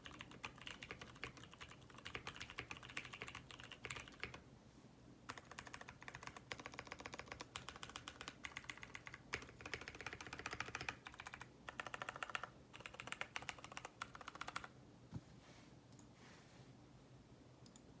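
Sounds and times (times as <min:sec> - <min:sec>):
keyboard typing clicks: 0:00.0 - 0:04.4, 0:05.3 - 0:14.7.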